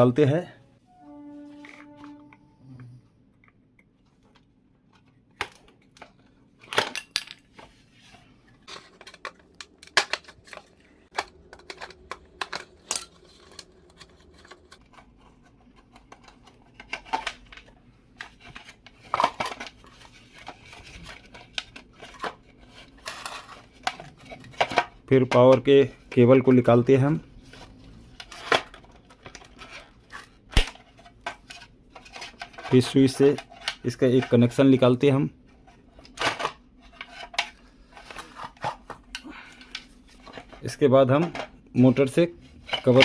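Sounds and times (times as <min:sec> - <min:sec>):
plastic and metal parts clattering: 0:04.0 - 0:43.0.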